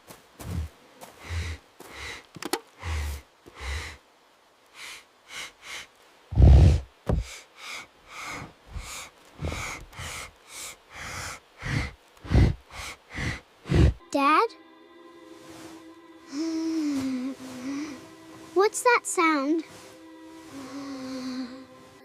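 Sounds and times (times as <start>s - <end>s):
cartoon bear sniffing and snorting: 2.8s - 4.0s, 4.8s - 14.0s.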